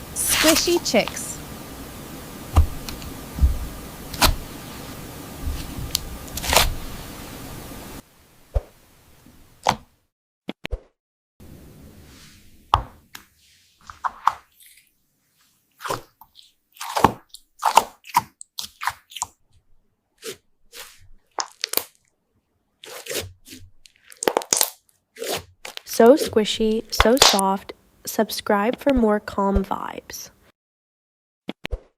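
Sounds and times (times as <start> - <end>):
background hiss: 0.0 - 9.6, 25.9 - 30.5
slime squishing pops: 27.0 - 27.4.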